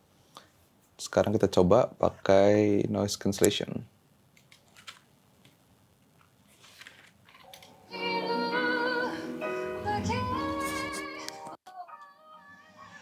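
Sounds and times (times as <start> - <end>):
music with singing voice: 7.9 - 13.0.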